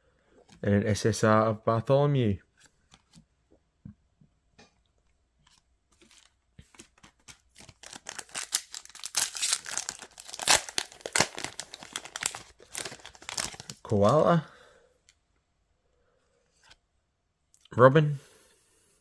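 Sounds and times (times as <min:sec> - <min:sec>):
wrapper being torn and crinkled: 0:07.6 - 0:14.2.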